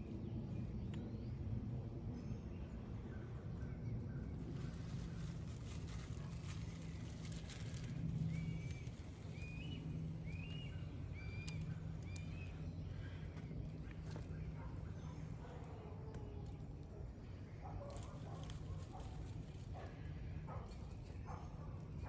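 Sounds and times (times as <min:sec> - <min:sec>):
steady low rumble: 0:00.0 - 0:22.0
bird calling: 0:08.2 - 0:15.3.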